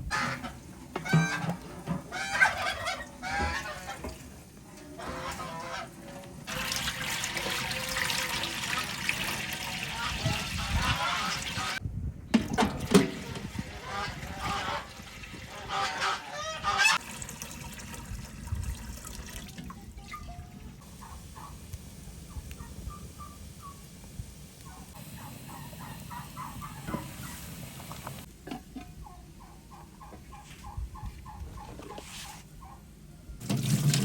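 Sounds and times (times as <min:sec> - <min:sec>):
birds honking: 0:00.0 - 0:04.1, 0:09.8 - 0:11.8, 0:13.8 - 0:17.0, 0:20.8 - 0:23.9, 0:24.6 - 0:28.2
birds calling: 0:20.1 - 0:28.3.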